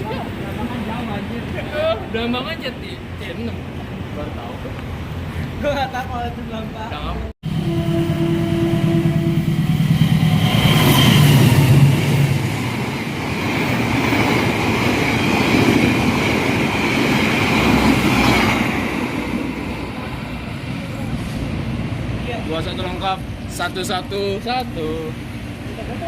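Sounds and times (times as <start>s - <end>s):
train wheels rumbling: 7.4s - 26.0s.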